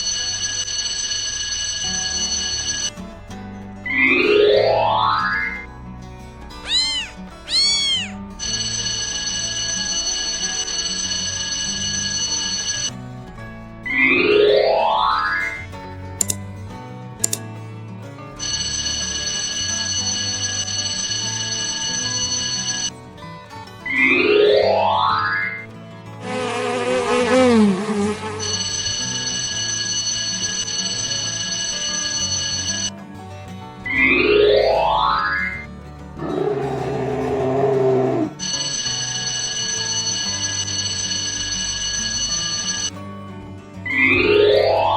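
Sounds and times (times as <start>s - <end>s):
steady high ringing tone: 0.0s - 3.1s, 8.4s - 13.0s, 18.4s - 22.9s, 28.4s - 32.9s, 38.4s - 43.0s
background music: 0.0s - 44.9s
cat meowing: 6.6s - 8.2s
insect buzzing: 26.2s - 29.2s
steady high electronic tone: 26.2s - 32.9s.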